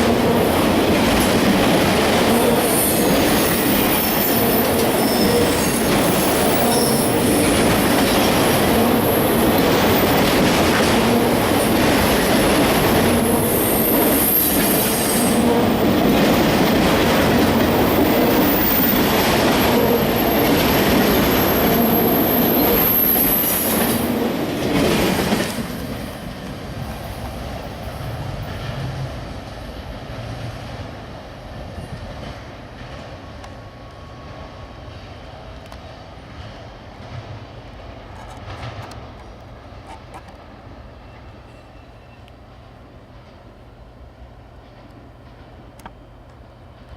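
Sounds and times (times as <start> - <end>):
freight train cars rolling past: 0.0 - 46.9
train wheel squeal: 2.4 - 8.6, 13.2 - 15.4, 17.8 - 24.1, 41.0 - 42.5.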